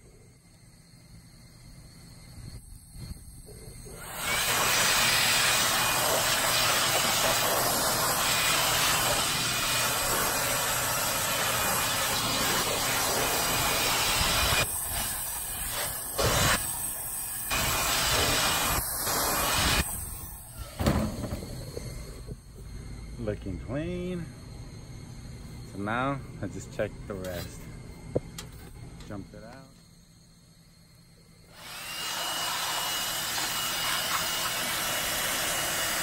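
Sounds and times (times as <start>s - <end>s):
hose water spraying on metal coils: 4.0s - 20.9s, 31.6s - 36.0s.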